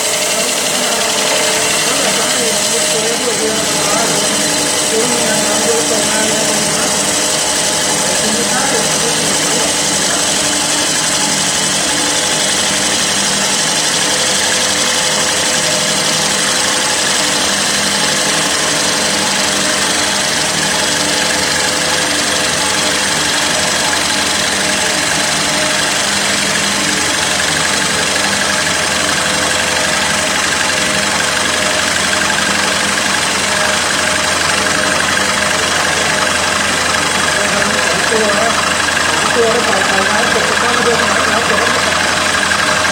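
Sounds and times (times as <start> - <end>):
wood lathe motor hum and hiss: 0.0 - 42.9.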